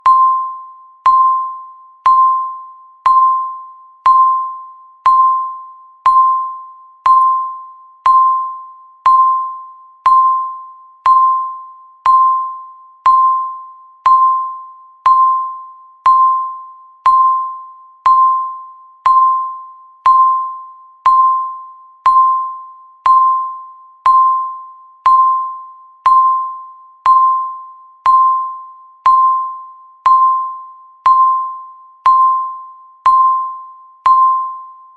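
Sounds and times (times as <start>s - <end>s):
countdown timer beeps: 0.0s - 34.9s.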